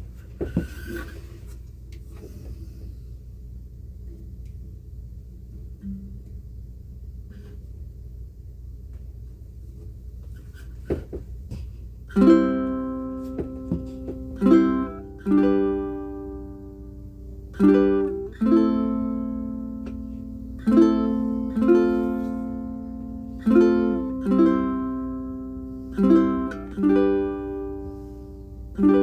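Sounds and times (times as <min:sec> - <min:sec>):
faint hum: 0:00.0 - 0:29.0
ukulele strummed chords: 0:05.8 - 0:06.5, 0:12.1 - 0:29.0.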